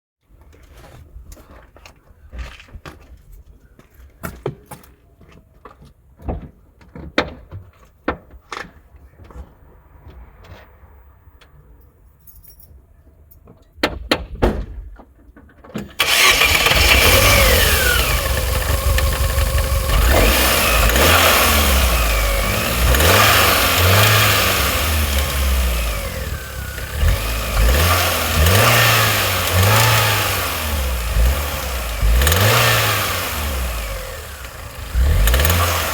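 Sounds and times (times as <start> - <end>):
car engine revving: 16.0 - 35.9.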